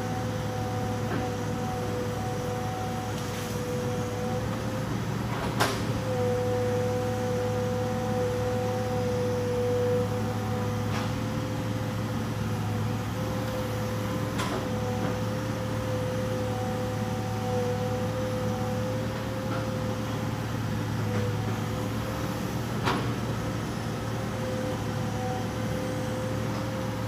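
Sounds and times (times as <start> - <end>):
excavator engine running: 0.0 - 27.0.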